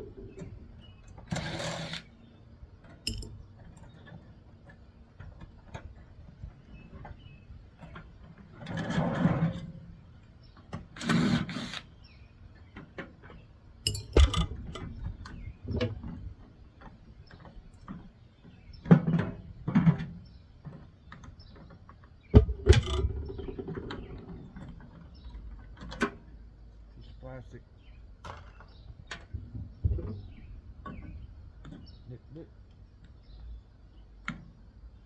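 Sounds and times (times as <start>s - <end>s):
metal parts knocking and rattling: 2.8s - 4.1s, 13.8s - 16.2s, 22.4s - 24.5s
sharp metal clanks: 3.0s - 3.4s, 13.8s - 14.9s.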